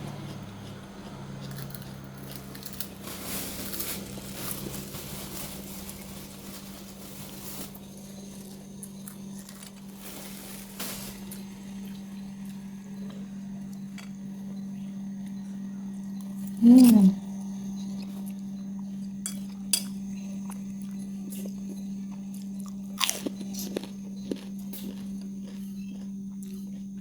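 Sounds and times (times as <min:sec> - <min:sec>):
person chewing noodles: 0:00.0 - 0:03.0, 0:20.4 - 0:27.0
steady low hum: 0:00.0 - 0:27.0.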